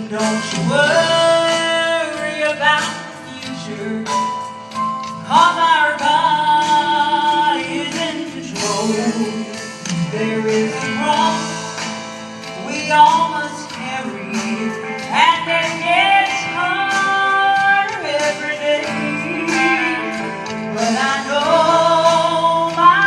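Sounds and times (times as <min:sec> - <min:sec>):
musical accompaniment: 0:00.0 - 0:23.0
gospel vocal trio singing: 0:17.8 - 0:23.0.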